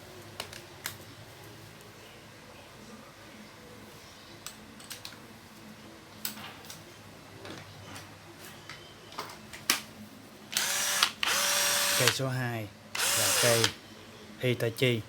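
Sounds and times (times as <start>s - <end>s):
cordless drill handling clicks: 10.6s - 12.2s, 13.0s - 13.8s
drill motor whirring: 10.6s - 12.2s, 13.0s - 13.8s.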